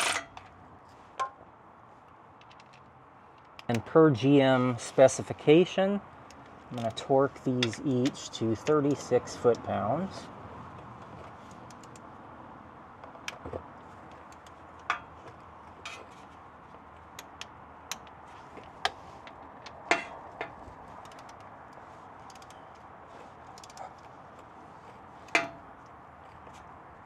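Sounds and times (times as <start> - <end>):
low background noise: 0.0 - 27.0
torque wrench clicks: 22.2 - 22.6, 23.6 - 23.8.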